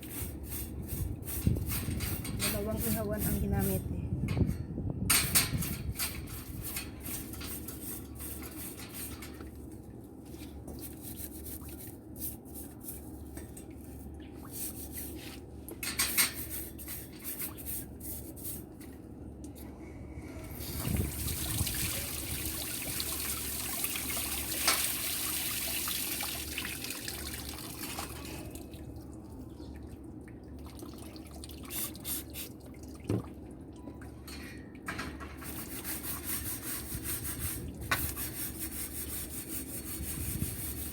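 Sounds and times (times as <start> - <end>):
tap water running and dripping: 20.6 - 28.9.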